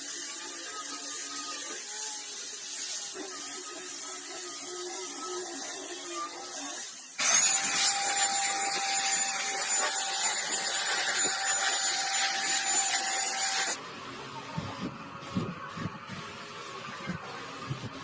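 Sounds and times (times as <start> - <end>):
power tool whining: 0.0 - 13.8.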